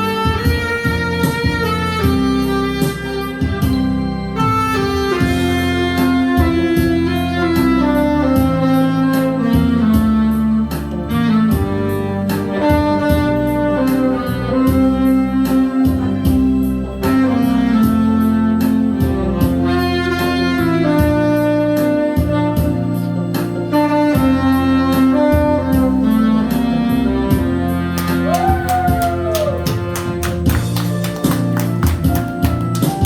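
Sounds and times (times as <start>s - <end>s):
saxophone melody: 0.0s - 33.0s
backing track drum beat: 28.0s - 33.0s.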